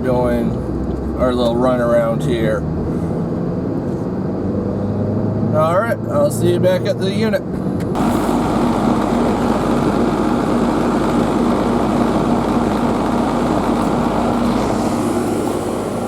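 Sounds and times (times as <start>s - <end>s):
motor drone: 8.0s - 16.0s.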